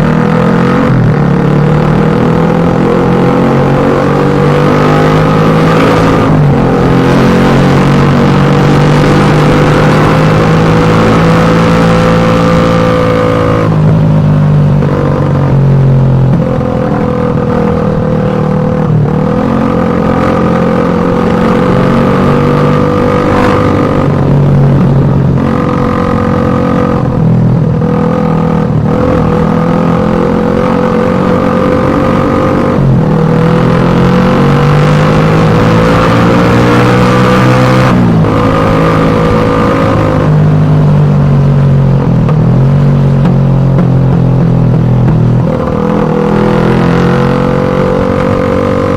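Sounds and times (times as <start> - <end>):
motorcycle engine running loudly: 0.0 - 48.9.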